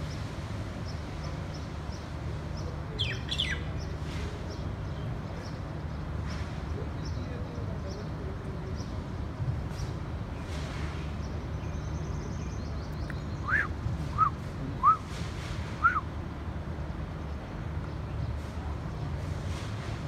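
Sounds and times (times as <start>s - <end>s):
bird whistling: 13.4s - 15.1s, 15.8s - 16.1s.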